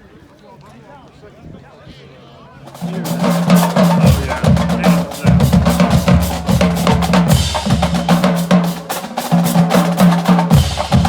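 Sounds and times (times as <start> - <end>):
fast heavy drum beat: 2.7 - 11.0.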